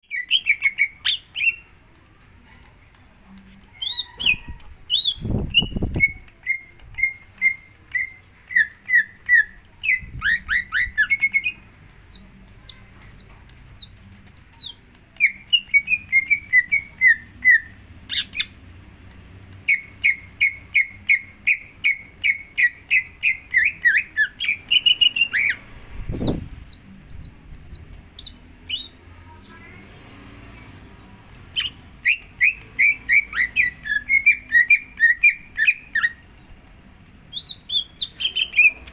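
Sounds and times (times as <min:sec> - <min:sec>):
bird chirping and whistling: 0:03.8 - 0:13.9, 0:19.7 - 0:29.0, 0:31.6 - 0:36.2, 0:37.3 - 0:38.8.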